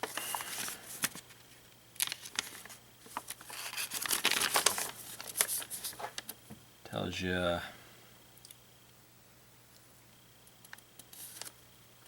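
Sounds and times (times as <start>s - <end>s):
paper rustling and crinkling: 0.0s - 6.4s, 11.1s - 11.5s.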